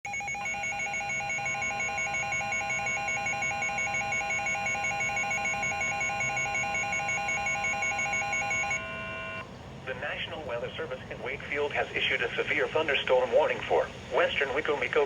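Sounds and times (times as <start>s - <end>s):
fast pulsing beep: 0.1s - 9.4s
electronic alarm tone: 0.1s - 9.5s.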